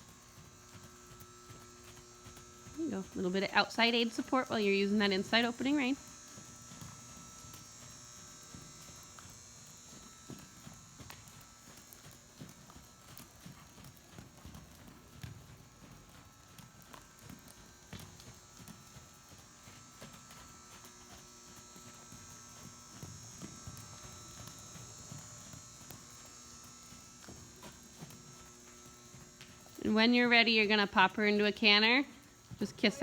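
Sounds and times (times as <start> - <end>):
horse hooves trotting: 0.0 - 33.0.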